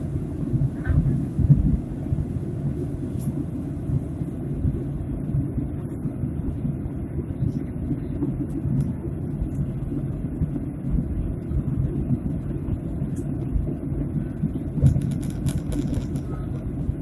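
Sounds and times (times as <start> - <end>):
airliner engines rumbling: 0.0 - 17.0.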